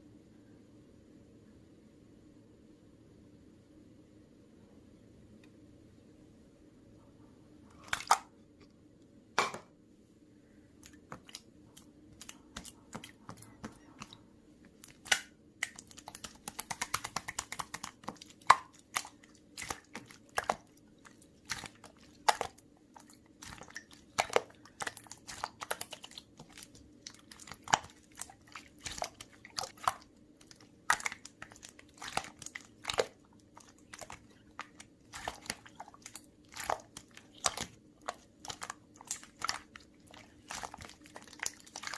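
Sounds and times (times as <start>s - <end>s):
faint steady hum: 0.0s - 41.9s
chewing crunchy food: 14.8s - 41.9s.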